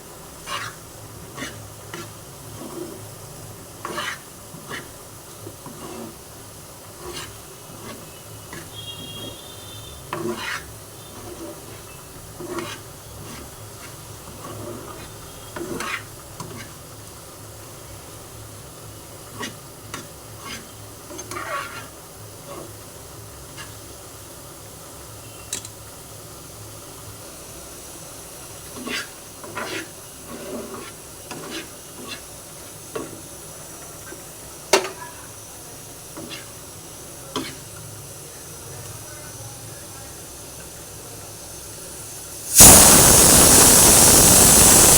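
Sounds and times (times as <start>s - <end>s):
food sizzling in a pan: 0.0s - 44.9s
spatula scraping a pan: 0.2s - 17.1s, 19.2s - 24.0s, 28.5s - 35.0s, 36.0s - 37.8s.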